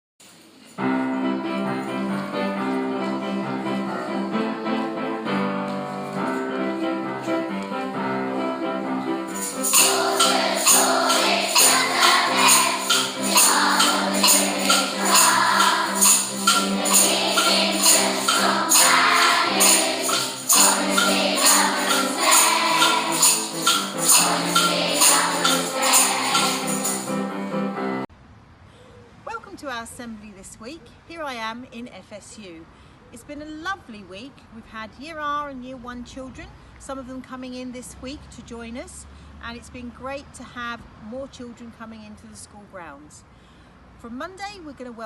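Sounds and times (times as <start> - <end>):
keyboard chords: 0.8 - 28.1
jingling percussion beat: 9.0 - 27.6.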